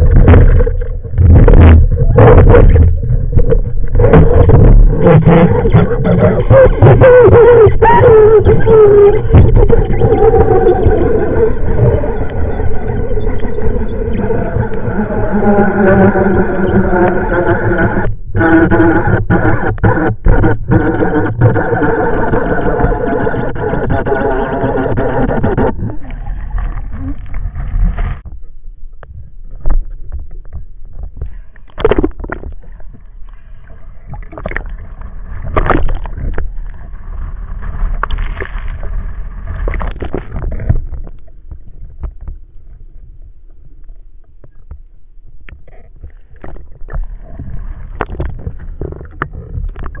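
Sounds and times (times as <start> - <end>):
water gurgling and sloshing: 0.0 - 50.0.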